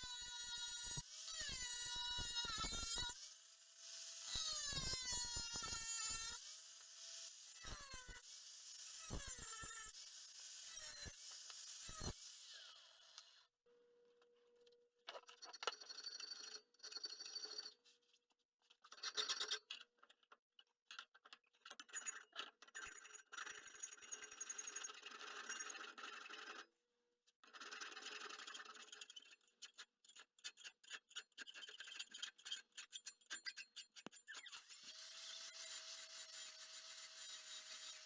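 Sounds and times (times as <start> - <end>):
file scraping steel: 27.9 - 38.0.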